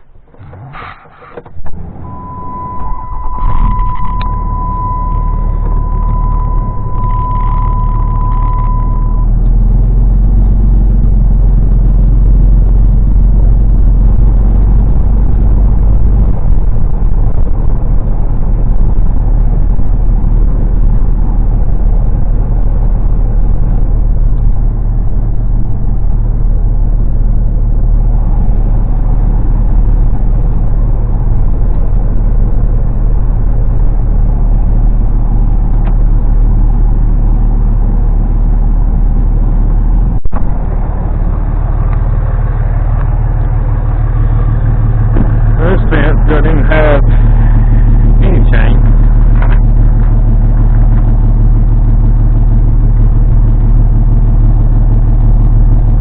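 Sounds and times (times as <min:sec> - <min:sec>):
motor vehicle running: 0:00.0 - 0:56.0
steady high-pitched tone: 0:01.7 - 0:17.4, 0:40.4 - 0:52.8.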